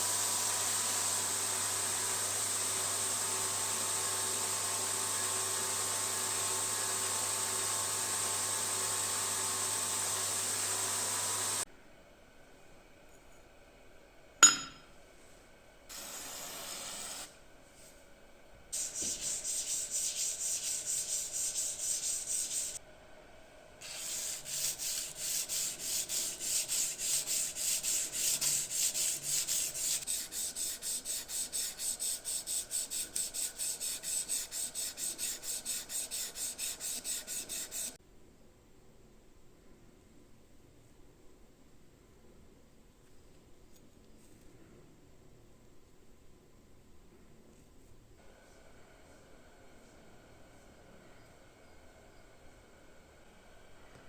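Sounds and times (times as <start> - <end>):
hand rubbing abrasive strokes: 18.8 - 22.8, 23.8 - 38.0.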